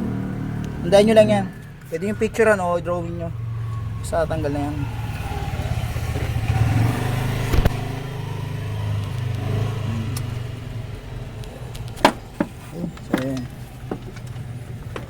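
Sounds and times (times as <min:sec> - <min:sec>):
vehicle engine running: 0:00.0 - 0:15.0
sharp knocks: 0:11.9 - 0:14.2.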